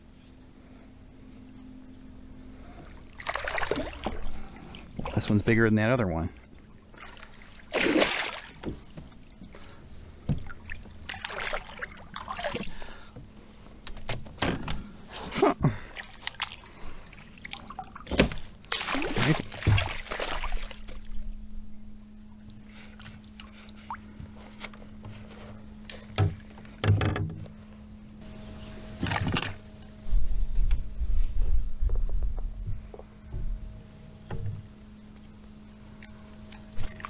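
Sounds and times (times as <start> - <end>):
water splashing and sloshing: 2.6 - 21.6, 22.2 - 27.6, 28.7 - 30.2, 36.0 - 37.0
knocks against a kayak: 26.1 - 27.5.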